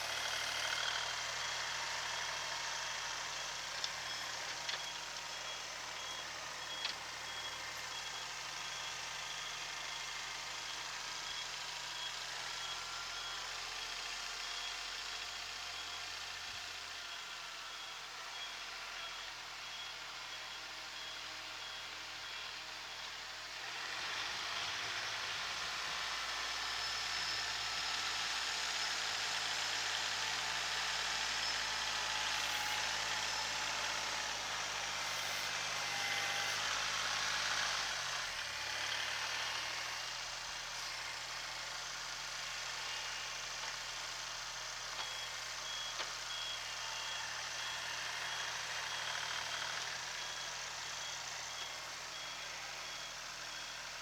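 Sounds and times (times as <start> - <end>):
tractor diesel engine running: 29.3 - 54.0.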